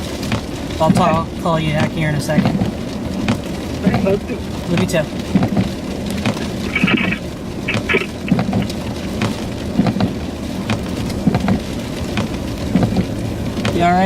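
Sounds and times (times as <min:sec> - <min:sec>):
sleet ticking on a car: 0:00.1 - 0:14.0.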